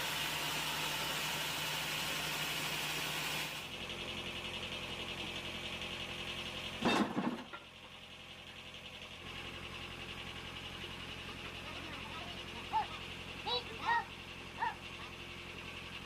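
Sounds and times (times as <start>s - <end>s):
sawmill machinery running: 0.0s - 16.0s.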